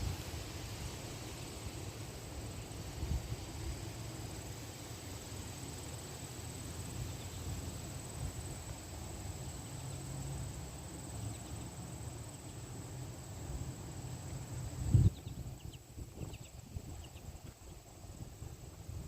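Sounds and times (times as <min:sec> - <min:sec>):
wind buffeting microphone: 0:14.9 - 0:19.0.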